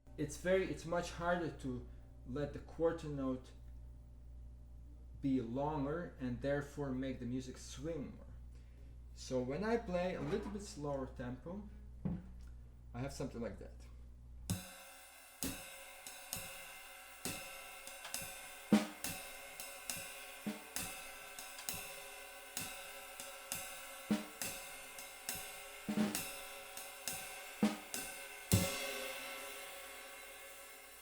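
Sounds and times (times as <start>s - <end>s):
ride cymbal swing pattern: 14.5s - 31.0s.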